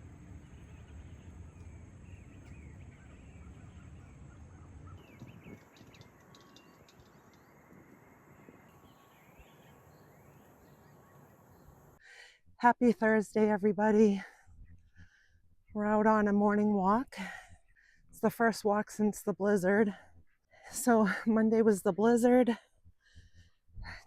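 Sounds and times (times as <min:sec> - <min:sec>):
low steady rumble: 0:00.0 - 0:05.4
small birds chirping: 0:00.3 - 0:12.0.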